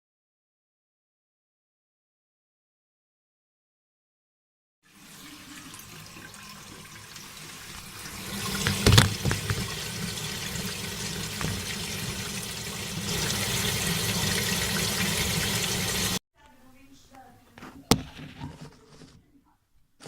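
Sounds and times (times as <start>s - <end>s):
water running in a toilet: 4.8s - 16.2s.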